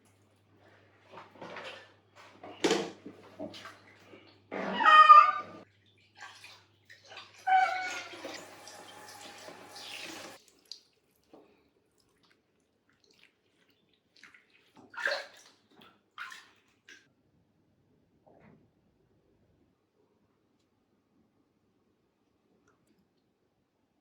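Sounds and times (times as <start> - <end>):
bathwater sloshing: 0.6 - 17.1
small water splashes: 2.5 - 4.4, 5.6 - 17.1
cat meowing: 4.6 - 5.6.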